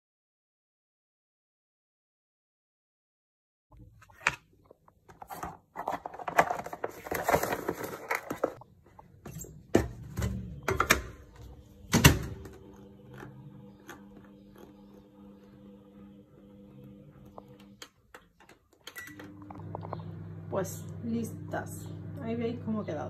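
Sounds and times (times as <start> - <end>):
microwave oven hum: 8.6 - 18.2, 18.9 - 23.0.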